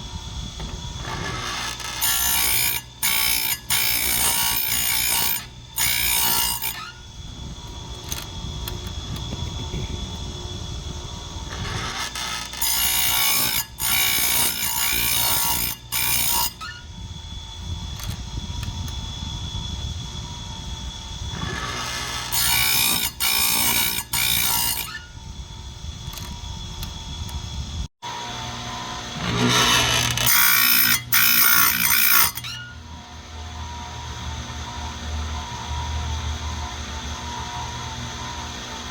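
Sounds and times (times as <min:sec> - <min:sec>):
grinder motor humming: 0:00.0 - 0:38.9
harsh high grinding on chain: 0:01.0 - 0:07.0, 0:11.5 - 0:16.8, 0:21.4 - 0:25.1, 0:29.2 - 0:32.8.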